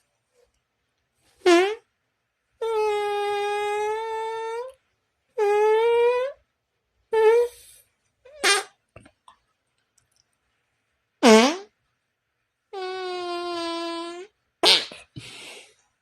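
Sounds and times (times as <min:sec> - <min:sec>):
fart sound effects: 0:01.4 - 0:01.9, 0:02.6 - 0:04.7, 0:05.4 - 0:06.4, 0:07.1 - 0:07.6, 0:08.3 - 0:08.8, 0:11.2 - 0:11.8, 0:12.8 - 0:15.2.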